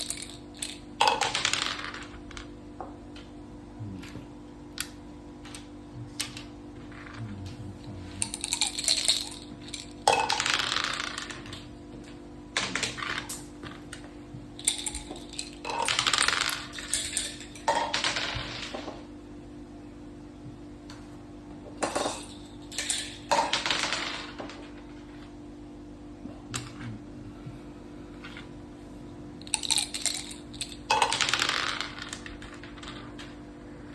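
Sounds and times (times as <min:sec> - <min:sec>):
dice and checkers clattering: 0:00.0 - 0:02.5, 0:04.8 - 0:07.4, 0:08.1 - 0:11.7, 0:12.6 - 0:14.0, 0:14.6 - 0:19.0, 0:21.8 - 0:25.2, 0:29.4 - 0:33.4
steady hum: 0:00.0 - 0:33.9.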